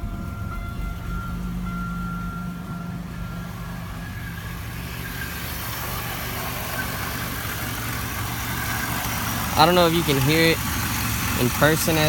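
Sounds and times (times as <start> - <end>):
thin high tone: 0.0 - 7.6
car engine idling: 0.0 - 12.0.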